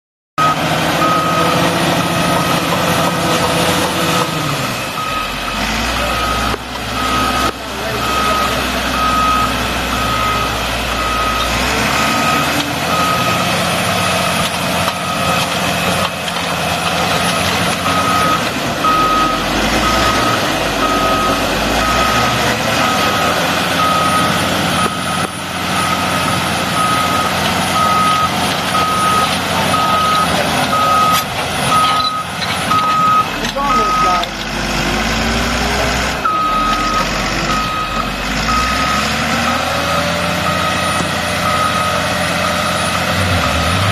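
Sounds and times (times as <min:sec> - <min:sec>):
heavy machine running: 0:00.4 - 0:43.9
backup alarm beeping: 0:04.4 - 0:13.5, 0:17.3 - 0:34.2, 0:36.2 - 0:43.8.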